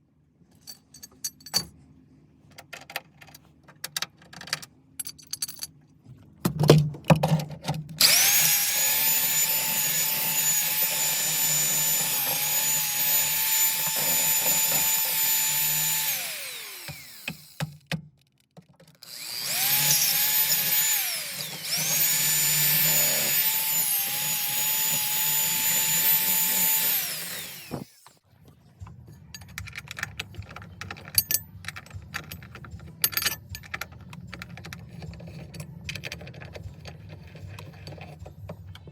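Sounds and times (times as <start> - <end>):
electric drill whining: 8.0 - 17.7, 19.0 - 28.2
handling clicks and rattles: 28.8 - 38.9.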